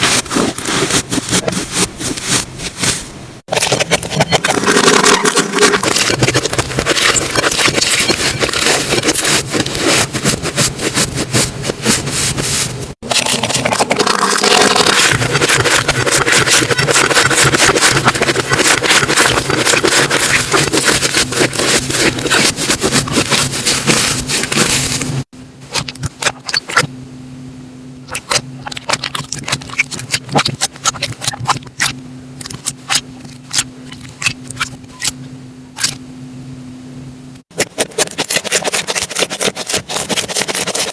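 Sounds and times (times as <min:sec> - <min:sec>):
low steady hum: 0:00.0 - 0:40.8
slime crackling and popping: 0:13.1 - 0:24.9.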